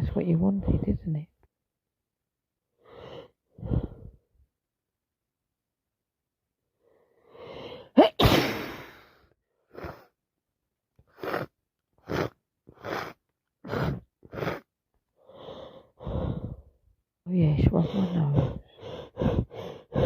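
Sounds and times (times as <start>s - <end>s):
person drawing in a breath: 2.8s - 4.3s, 6.8s - 7.9s, 11.1s - 16.8s, 17.8s - 20.0s
person sneezing: 8.0s - 9.2s
short sniffs: 11.2s - 14.6s.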